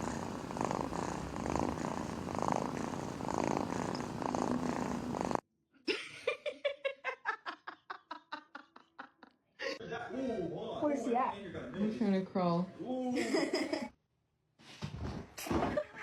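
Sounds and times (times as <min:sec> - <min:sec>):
cat purring loudly: 0:00.0 - 0:05.4.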